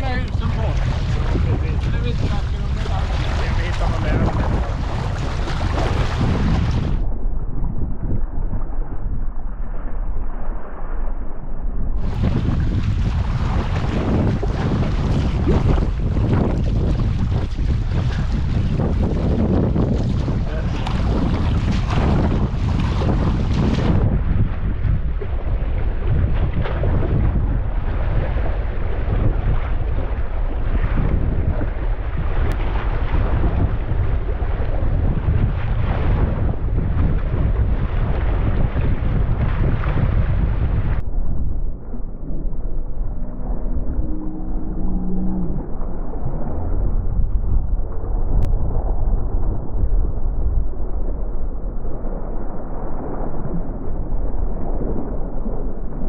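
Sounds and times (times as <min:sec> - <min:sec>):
waves washing: 0:00.0 - 0:07.1, 0:12.0 - 0:41.1
wind buffeting microphone: 0:00.0 - 0:10.8, 0:11.4 - 0:56.0.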